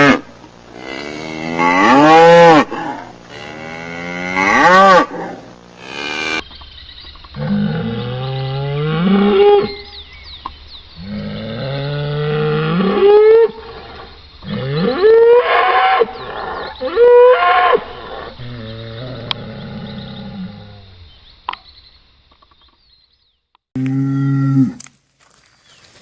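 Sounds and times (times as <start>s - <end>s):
cattle bellowing: 0.0s - 6.4s.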